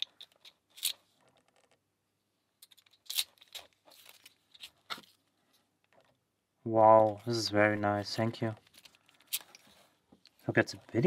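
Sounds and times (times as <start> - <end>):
packaging rustling: 2.7 - 5.3.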